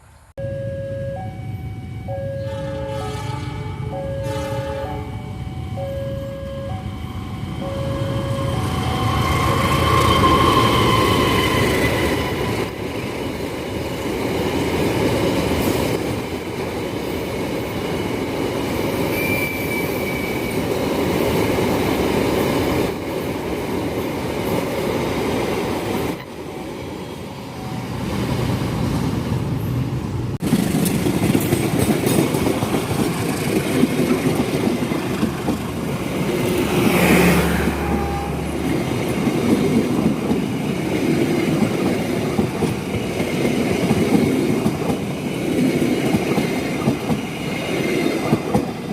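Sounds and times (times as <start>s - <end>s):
train wheel squeal: 2.2s - 12.8s, 19.0s - 20.8s
train wheels rumbling on rails: 2.8s - 48.9s.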